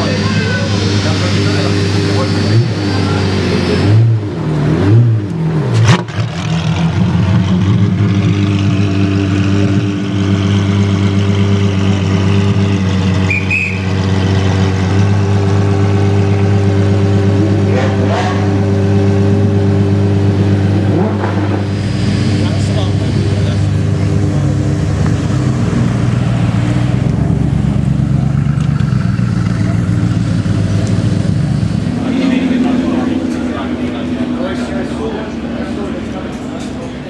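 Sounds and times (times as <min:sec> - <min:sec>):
sharp exhaust crack: 0:00.0 - 0:04.2, 0:20.3 - 0:36.2
car engine revving and idling: 0:00.0 - 0:37.0.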